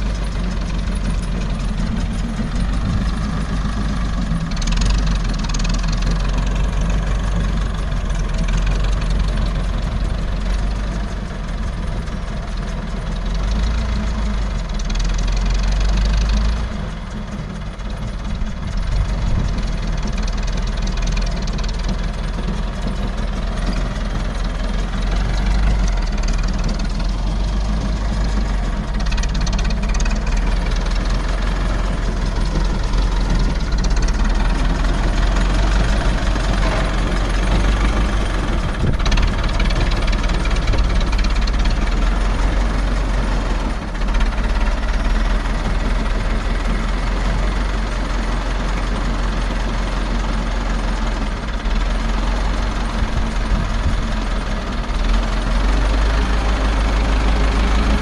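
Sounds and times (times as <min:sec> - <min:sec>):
baler machinery running: 0:00.0 - 0:58.0
tractor engine running: 0:00.0 - 0:58.0.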